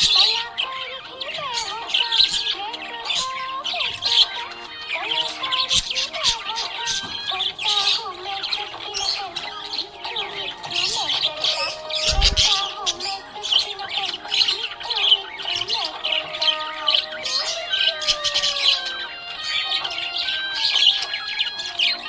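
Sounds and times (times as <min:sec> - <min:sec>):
budgerigar chirping and warbling: 0:00.0 - 0:22.0.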